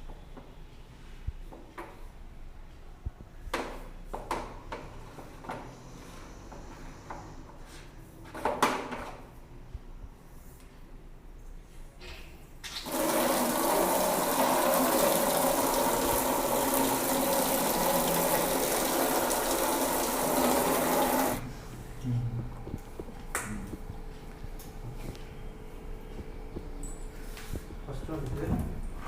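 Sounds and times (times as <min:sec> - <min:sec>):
water rushing: 0:12.8 - 0:21.4.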